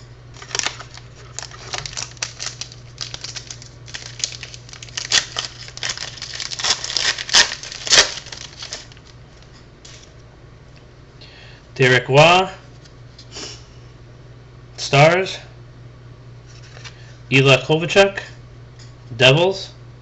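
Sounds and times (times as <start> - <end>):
card packs crinkling: 0.4 - 9.2.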